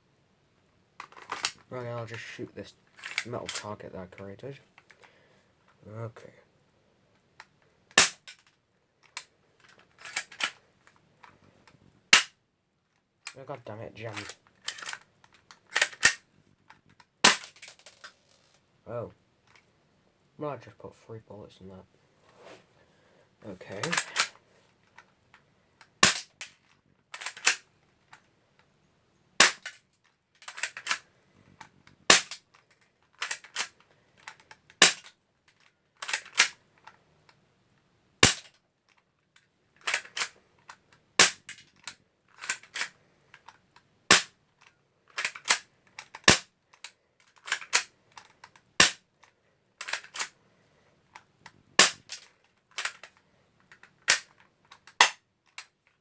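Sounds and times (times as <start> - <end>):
air pistol shots: 8.0 - 8.3, 17.2 - 18.2, 26.0 - 26.3, 29.4 - 29.7, 32.1 - 32.4, 34.8 - 35.0, 38.2 - 38.5, 41.2 - 41.4, 44.1 - 44.3, 51.8 - 52.1.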